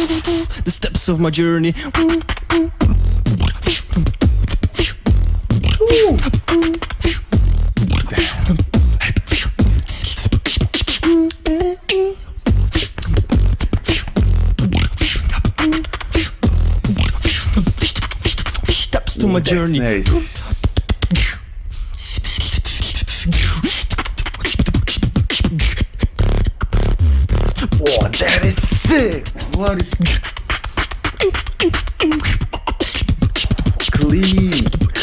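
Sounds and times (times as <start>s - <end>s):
person beatboxing: 1.8s - 11.0s, 12.8s - 21.4s, 22.0s - 26.0s, 27.6s - 35.0s
short sung tones: 27.8s - 30.1s.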